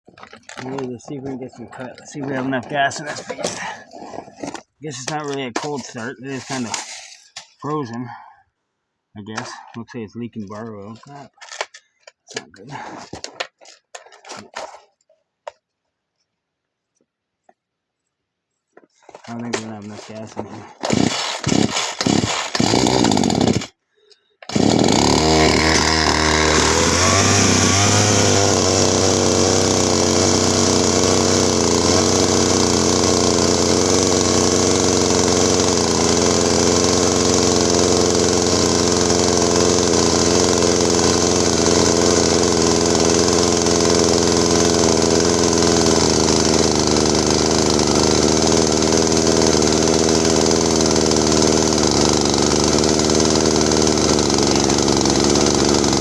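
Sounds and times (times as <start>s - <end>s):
chainsaw revving: 0.1s - 7.5s, 19.1s - 23.8s, 24.4s - 56.0s.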